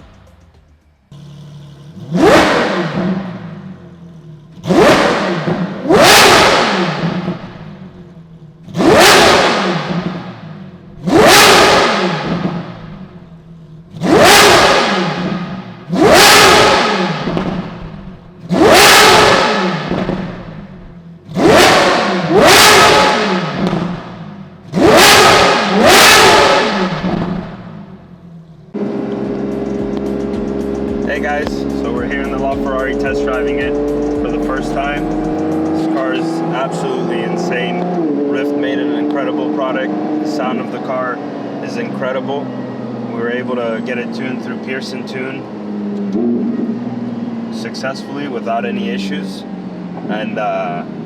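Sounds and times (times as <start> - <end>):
sports car engine revving: 0.0 - 51.0.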